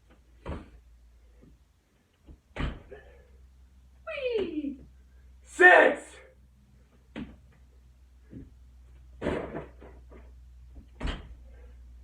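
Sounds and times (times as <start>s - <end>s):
thuds of exercise on floor: 0.0s - 1.6s, 2.2s - 3.1s, 7.1s - 7.6s, 8.2s - 11.6s.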